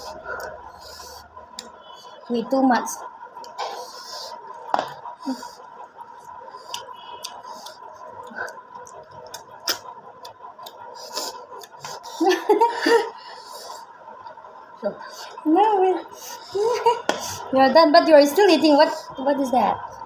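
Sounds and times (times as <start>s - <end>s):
people chewing and smacking: 0.0s - 2.0s, 3.3s - 12.5s.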